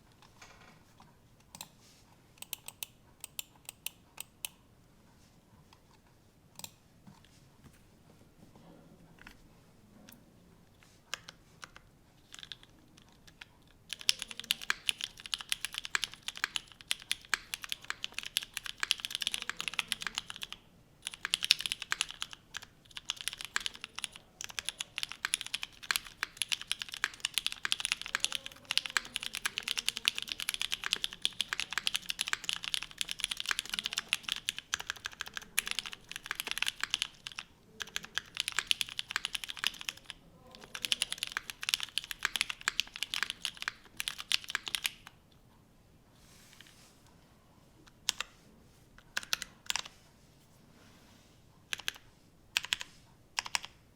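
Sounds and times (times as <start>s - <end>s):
mechanical keyboard typing: 2.4s - 4.6s, 11.1s - 45.2s, 48.0s - 48.3s, 49.0s - 49.9s, 51.7s - 53.8s.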